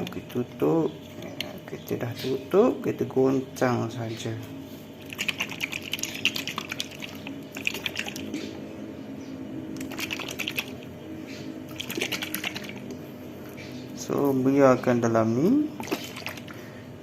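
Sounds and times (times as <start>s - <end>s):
oil and garlic sloshing in shaken container: 5.0s - 8.3s.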